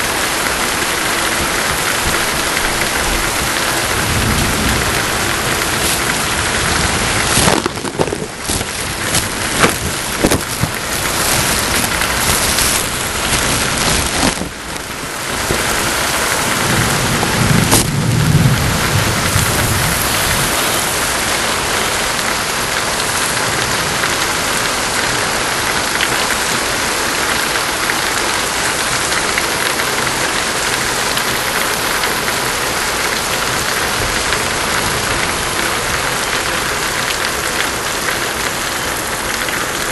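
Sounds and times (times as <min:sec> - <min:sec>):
heavy rain pouring: 0:00.0 - 0:39.9
low rumble of thunder: 0:01.6 - 0:20.6
sharp cracks: 0:05.0 - 0:15.8, 0:17.6 - 0:18.2.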